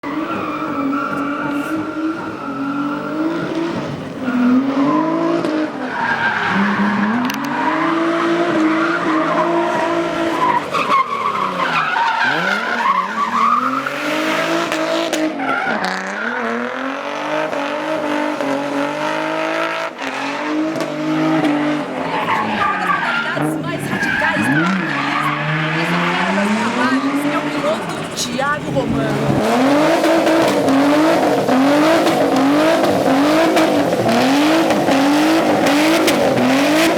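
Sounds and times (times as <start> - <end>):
car engine revving: 0.0 - 36.9
tyres squealing: 5.8 - 14.8, 21.3 - 36.9.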